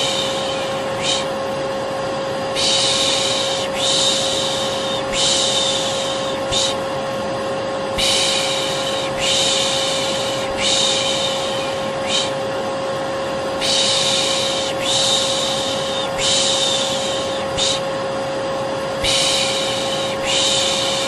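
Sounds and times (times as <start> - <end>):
person shushing: 0.0 - 1.4, 2.6 - 6.9, 8.0 - 12.4, 13.6 - 17.9, 19.0 - 21.0
vacuum cleaner humming: 0.0 - 21.0.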